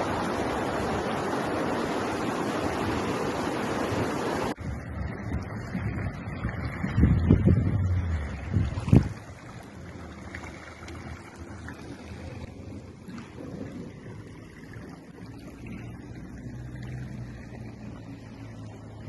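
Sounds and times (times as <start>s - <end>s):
waterfall rushing: 0.0s - 4.6s
low rumble: 4.6s - 19.0s.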